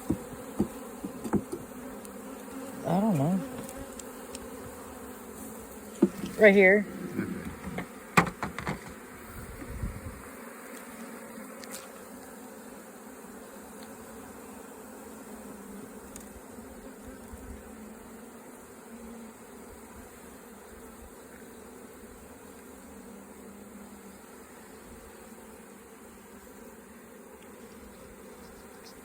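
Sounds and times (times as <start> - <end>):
sharp knocks: 0.0 - 1.7, 7.4 - 9.0
honeybees buzzing: 0.0 - 29.0.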